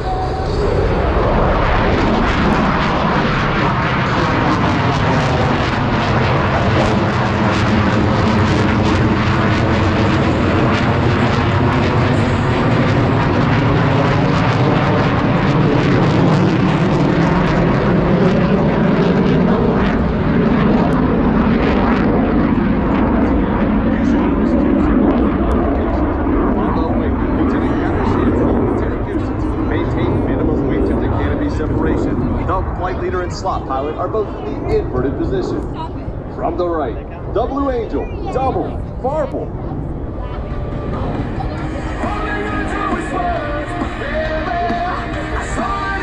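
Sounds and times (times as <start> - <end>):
jet noise flying over: 0.0 - 46.0.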